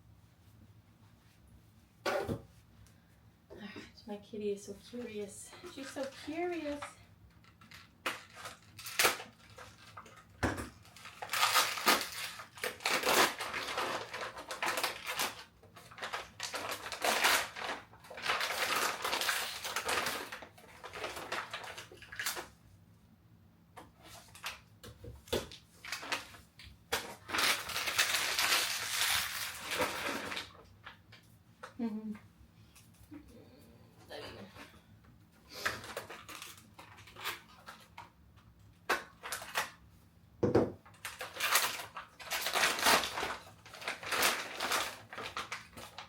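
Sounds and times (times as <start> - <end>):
packaging crinkling: 7.5 - 22.5, 25.5 - 31.0, 35.6 - 38.0, 38.9 - 39.8, 40.9 - 46.0.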